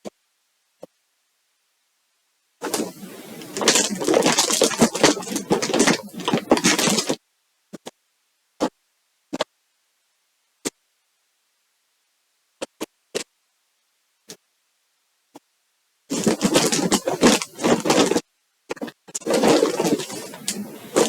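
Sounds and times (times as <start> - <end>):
plastic packaging crinkling: 2.6 - 7.2, 16.1 - 18.2, 19.2 - 21.0.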